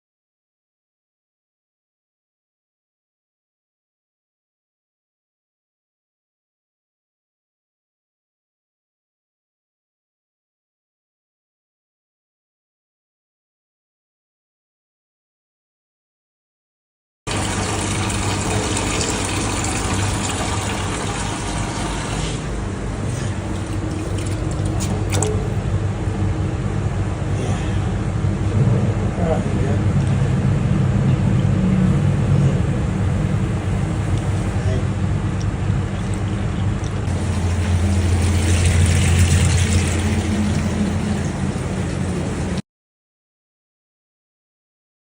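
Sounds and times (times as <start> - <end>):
water rushing: 17.3 - 25.4, 37.1 - 42.6
low machine hum: 17.3 - 42.6
motor running: 37.1 - 42.6.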